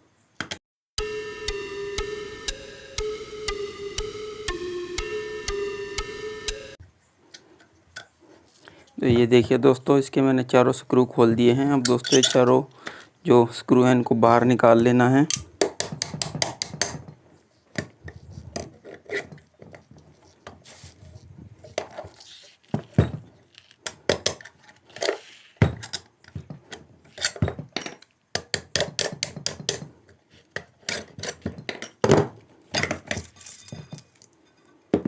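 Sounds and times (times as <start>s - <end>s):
metallic screw clicks and clinks: 11.8s - 12.4s.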